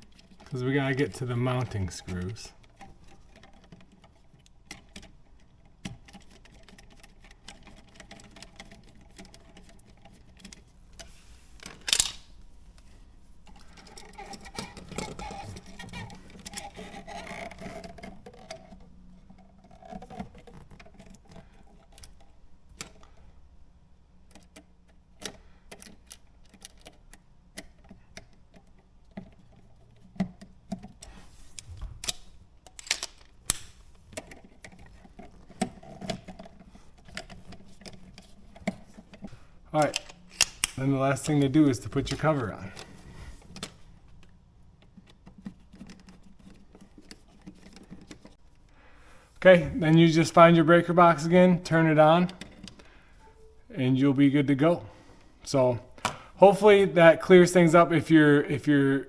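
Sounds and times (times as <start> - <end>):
screwdriver clicks and scrapes: 6.0 - 12.3, 30.2 - 41.4.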